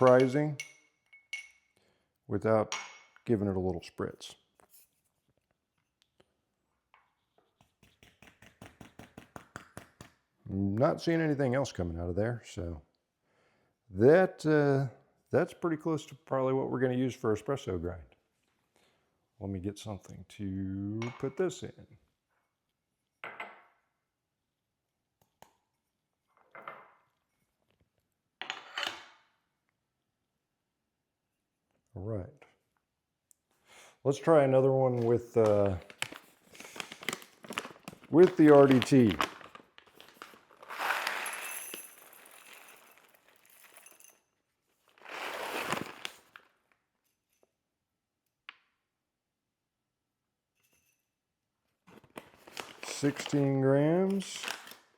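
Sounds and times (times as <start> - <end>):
kitchenware clinking and clattering: 0.0 - 1.6, 2.6 - 3.2, 40.0 - 44.1
coffee beans rattling: 37.4 - 44.1, 45.0 - 46.4.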